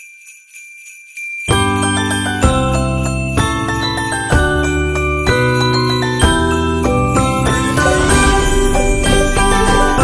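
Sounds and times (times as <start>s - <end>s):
festive music with jingle bells: 0.0s - 10.0s.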